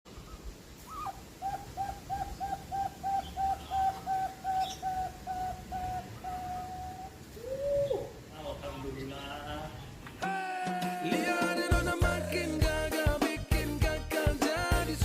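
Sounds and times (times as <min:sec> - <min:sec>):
dove cooing: 0:00.1 - 0:08.3.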